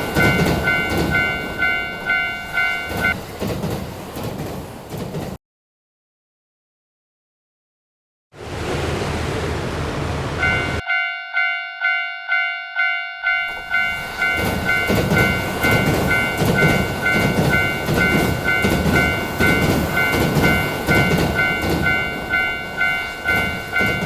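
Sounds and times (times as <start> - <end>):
railroad crossing bell ringing: 0.0 - 3.2, 10.4 - 24.0
train rumbling past: 0.0 - 5.4, 8.4 - 11.5, 12.8 - 24.0
wheels clattering over rail joints: 0.0 - 5.4, 13.5 - 24.0.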